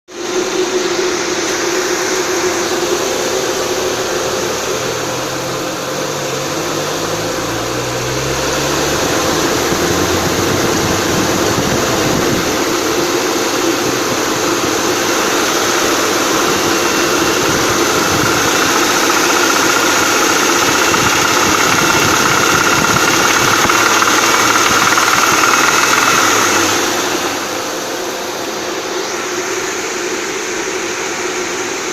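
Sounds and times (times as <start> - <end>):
car engine knocking: 1.7 - 27.8.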